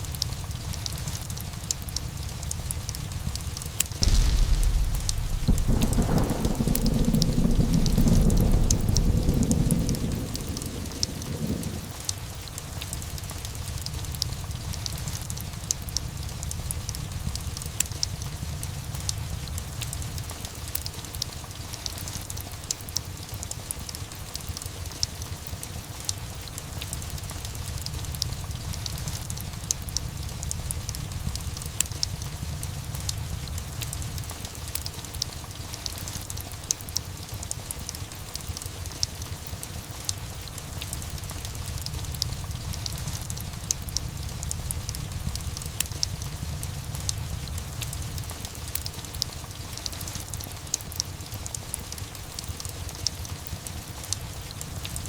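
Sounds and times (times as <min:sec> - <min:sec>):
steady rain: 0:00.0 - 0:55.0
fireplace crackling: 0:01.4 - 0:14.3
thunder rolling: 0:04.0 - 0:13.1.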